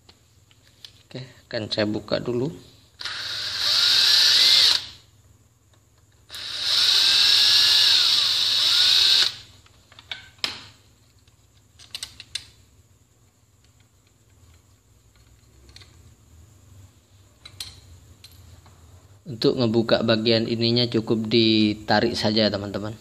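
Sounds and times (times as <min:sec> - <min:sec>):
electric screwdriver running: 0:03.0 - 0:04.9, 0:06.3 - 0:09.4
small parts clicking and tapping: 0:09.6 - 0:12.6, 0:13.6 - 0:16.1.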